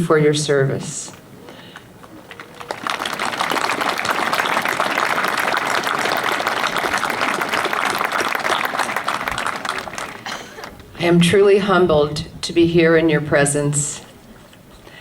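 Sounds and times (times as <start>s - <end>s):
crowd applauding: 1.7s - 10.9s.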